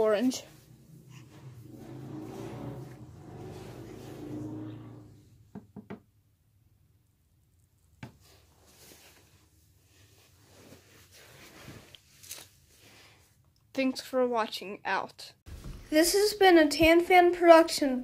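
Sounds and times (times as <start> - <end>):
fan motor hum: 0.0 - 5.4.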